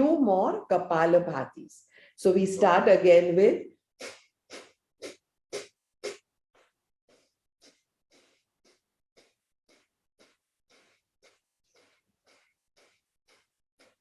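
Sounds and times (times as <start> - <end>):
forceful exhalations through nose: 4.0 - 6.2, 7.1 - 14.0.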